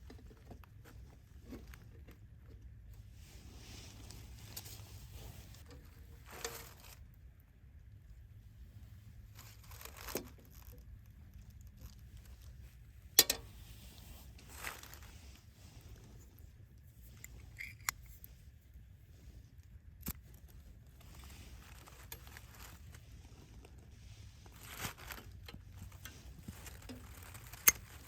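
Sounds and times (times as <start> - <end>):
rustling and crinkling: 0.0 - 28.0.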